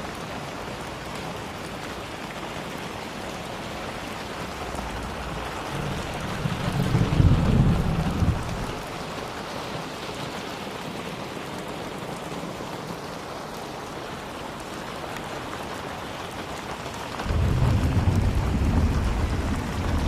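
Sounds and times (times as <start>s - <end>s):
heavy rainfall: 0.0s - 20.0s
thunder rumbling: 4.2s - 9.3s, 17.2s - 20.0s.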